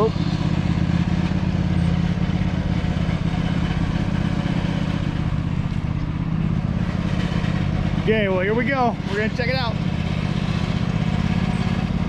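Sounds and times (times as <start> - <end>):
lawn mower engine running: 0.0 - 12.0.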